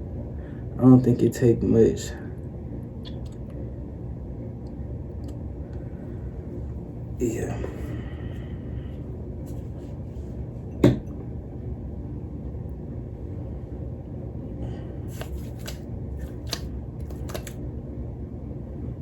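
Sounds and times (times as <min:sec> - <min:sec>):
steady low hum: 0:00.0 - 0:19.0
hands rustling: 0:15.1 - 0:17.6
plastic bottle clicks: 0:16.4 - 0:17.6.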